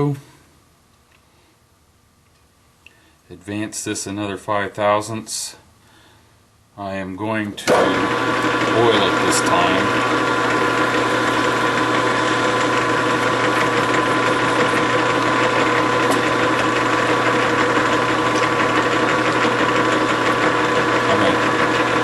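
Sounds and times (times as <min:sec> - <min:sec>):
metal lathe humming: 0:07.6 - 0:22.0.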